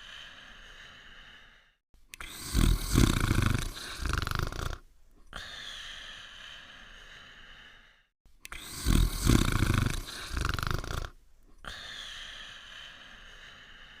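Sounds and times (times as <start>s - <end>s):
cartoon rattling snore: 2.2s - 4.8s, 8.5s - 11.2s.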